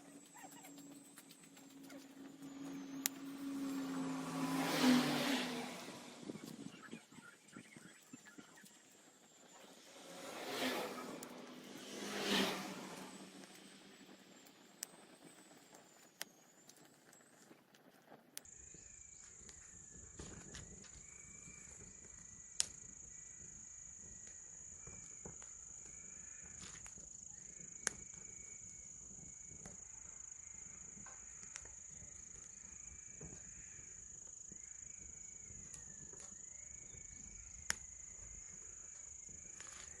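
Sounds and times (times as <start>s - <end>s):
faint wavering whistle: 0.0s - 17.5s
crickets trilling: 0.0s - 40.0s
firewood crackling and popping: 13.4s - 18.5s, 21.6s - 23.0s.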